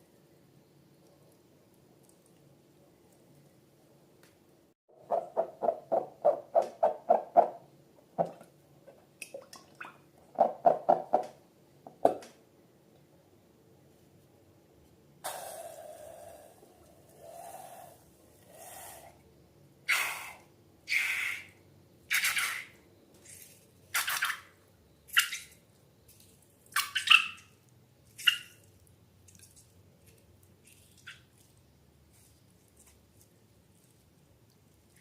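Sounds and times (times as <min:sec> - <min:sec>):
slime squelching and splashing: 0:28.0 - 0:35.0.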